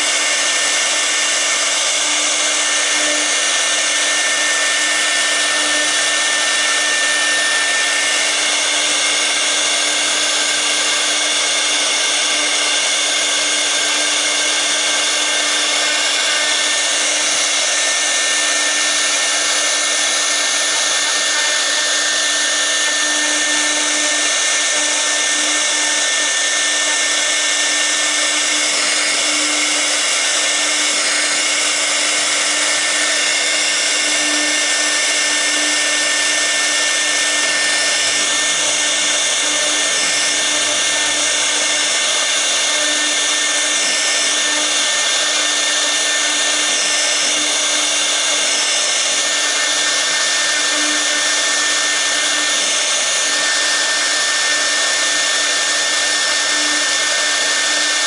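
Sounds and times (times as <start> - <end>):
router spindle whine: 0.0 - 58.0
steady hum: 23.7 - 49.9.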